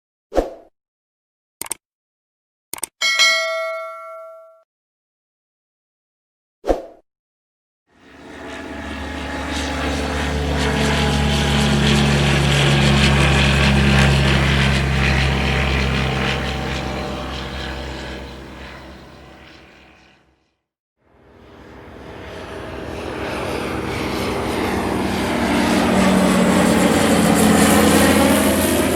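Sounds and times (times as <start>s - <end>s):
propeller aircraft engine drone: 7.9s - 28.9s.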